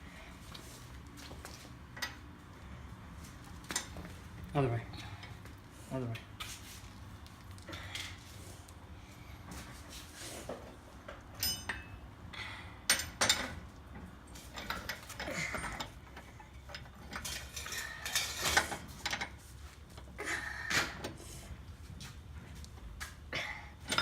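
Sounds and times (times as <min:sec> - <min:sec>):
lug wrench clanking on lug nuts: 0:11.3 - 0:12.0.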